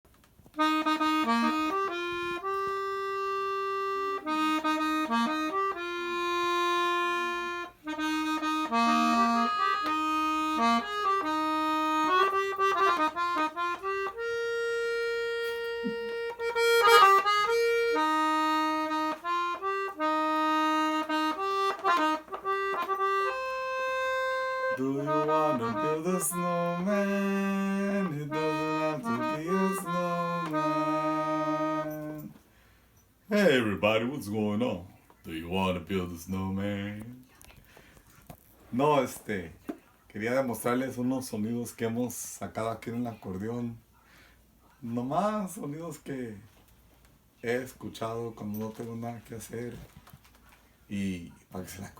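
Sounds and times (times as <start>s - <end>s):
accordion playing a tune: 0.5s - 32.4s.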